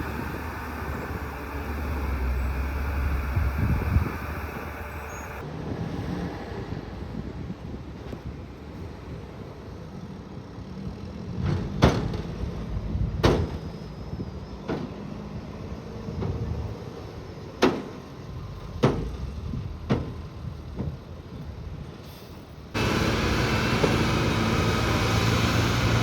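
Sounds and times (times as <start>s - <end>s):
excavator engine running: 0.0s - 5.4s, 22.8s - 26.0s.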